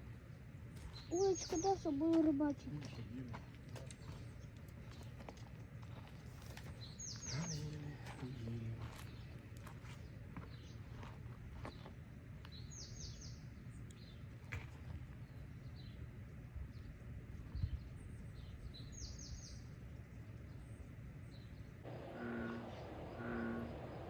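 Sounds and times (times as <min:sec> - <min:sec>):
small birds chirping: 0:00.8 - 0:24.0
steady low rumble: 0:01.8 - 0:24.0
high descending bird notes: 0:21.9 - 0:24.0
pulsing low tones: 0:21.9 - 0:24.0.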